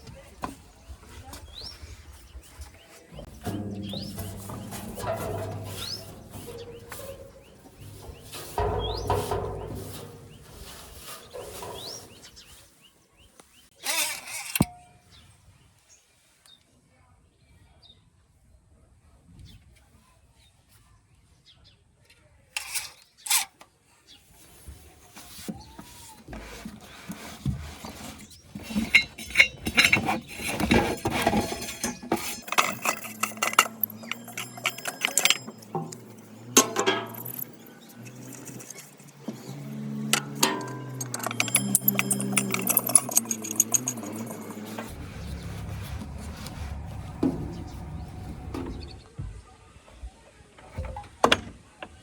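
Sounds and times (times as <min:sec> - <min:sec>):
birds chirping: 0:00.8 - 0:14.0, 0:28.1 - 0:49.3
hard objects clinking: 0:03.3 - 0:12.2, 0:28.6 - 0:46.1.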